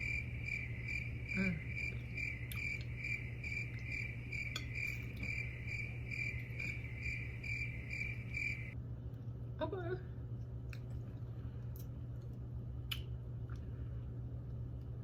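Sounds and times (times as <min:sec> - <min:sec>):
cricket chirping: 0:00.0 - 0:08.8
low steady hum: 0:00.0 - 0:15.0.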